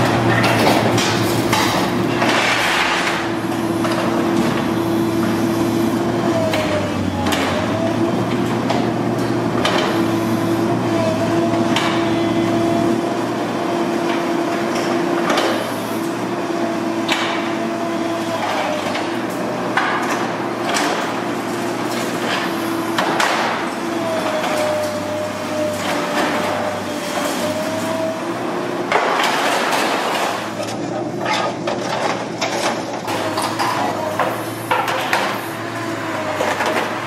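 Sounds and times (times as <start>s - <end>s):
excavator hydraulic whine: 3.1s - 19.8s, 33.1s - 37.0s.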